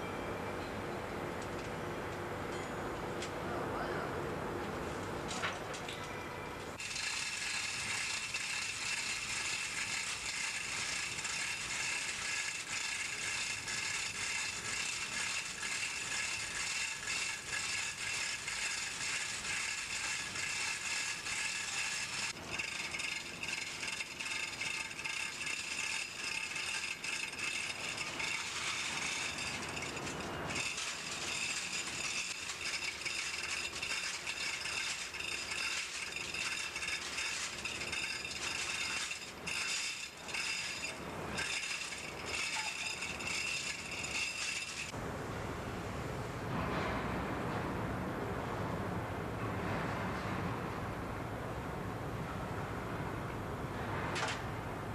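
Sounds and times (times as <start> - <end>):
high ringing: 6.0 - 44.9
mechanical rattling: 6.8 - 45.0.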